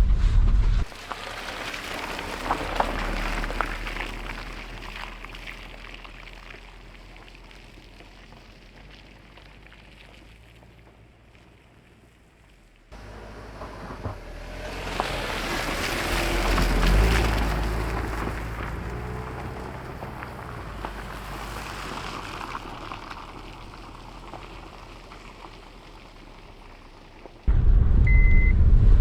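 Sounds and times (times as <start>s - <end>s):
engine hum: 0.0s - 29.0s
tyres splashing through mud: 0.9s - 27.5s.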